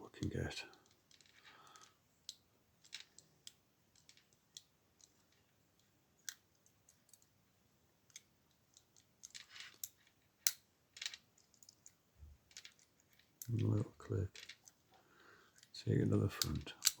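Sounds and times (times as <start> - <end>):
pick wire clicking in padlock: 16.4 - 17.0.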